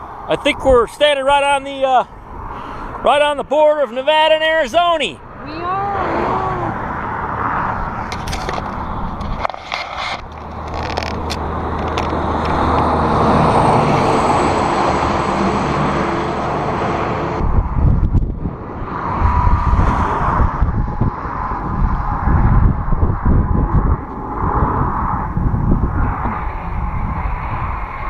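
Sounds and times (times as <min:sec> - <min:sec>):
road traffic passing: 0:00.0 - 0:28.0
wind buffeting microphone: 0:04.4 - 0:28.0.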